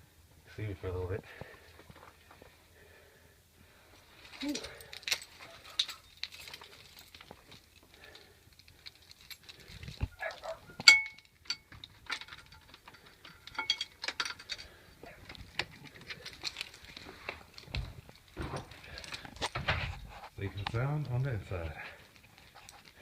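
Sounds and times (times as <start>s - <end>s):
keys jangling: 4.2s - 19.3s
sharp metallic clack: 10.8s - 11.7s.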